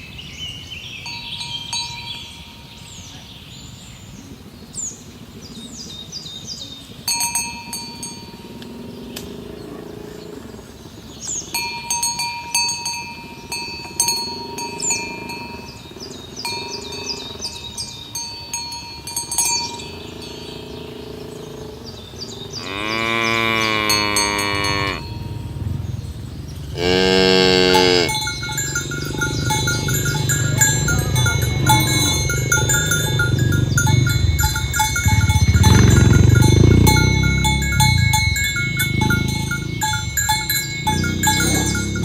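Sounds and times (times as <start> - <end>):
cows mooing: 19.1 - 42.0.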